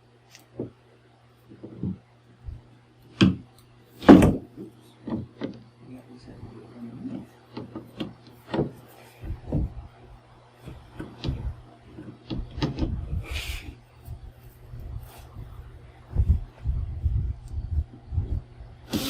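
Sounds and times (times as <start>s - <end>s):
steady low hum: 0.0s - 19.0s
plywood panel knocking and scraping: 1.5s - 2.0s, 4.0s - 5.6s, 7.1s - 9.8s, 10.7s - 13.1s.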